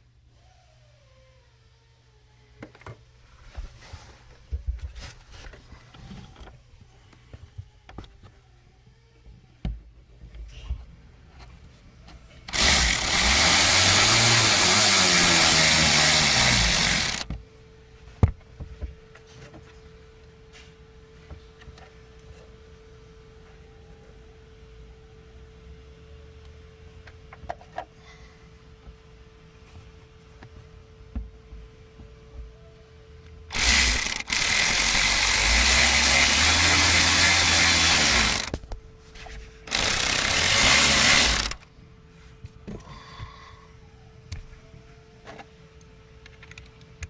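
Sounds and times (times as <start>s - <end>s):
power tool running: 12.5s - 17.3s, 33.5s - 38.6s, 39.7s - 41.6s.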